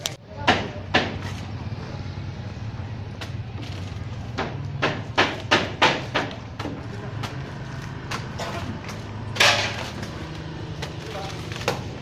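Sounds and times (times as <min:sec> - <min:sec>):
sharp knocks: 0:04.3 - 0:06.8.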